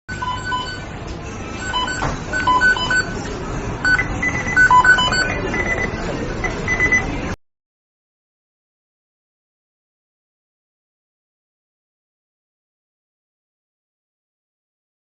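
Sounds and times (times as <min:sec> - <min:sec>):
short electronic beeps: 0:00.1 - 0:00.8, 0:01.6 - 0:03.2, 0:03.8 - 0:07.2
steady background noise: 0:00.1 - 0:07.4.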